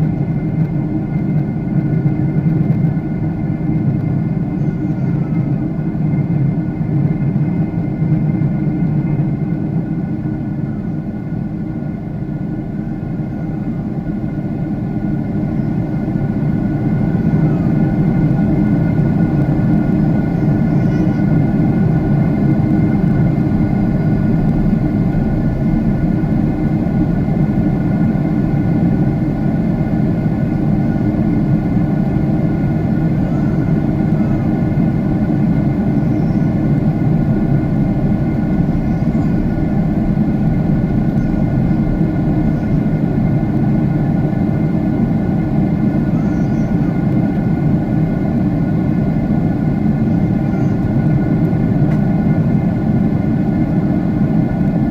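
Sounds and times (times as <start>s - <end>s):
jet engine cabin drone: 0.0s - 54.9s.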